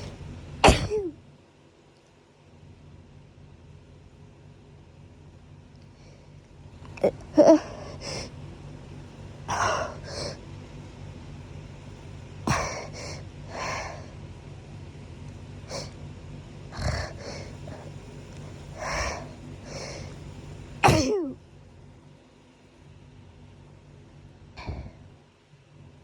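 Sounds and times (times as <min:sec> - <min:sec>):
person sneezing: 0:00.6 - 0:01.2, 0:12.5 - 0:13.0, 0:20.8 - 0:21.4
breathing: 0:05.9 - 0:06.4, 0:07.7 - 0:08.4, 0:09.5 - 0:10.4, 0:12.5 - 0:14.2, 0:16.8 - 0:18.0, 0:18.8 - 0:20.2, 0:24.6 - 0:25.1.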